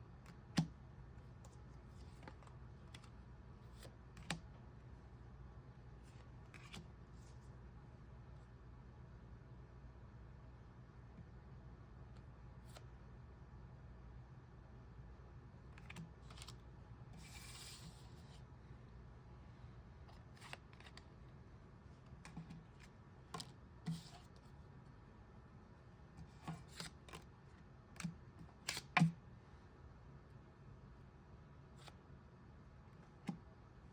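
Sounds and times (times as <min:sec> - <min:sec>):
cards sliding swish: 0:17.2 - 0:18.4.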